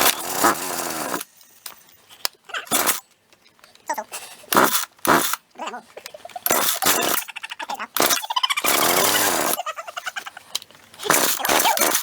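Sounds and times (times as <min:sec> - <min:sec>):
chainsaw engine sputtering: 0:00.0 - 0:01.3, 0:02.6 - 0:03.0, 0:04.5 - 0:12.0
chainsaw starter cord zipping: 0:00.0 - 0:01.3, 0:02.5 - 0:03.0, 0:04.5 - 0:05.4, 0:06.4 - 0:07.3, 0:07.9 - 0:09.7, 0:11.0 - 0:12.0.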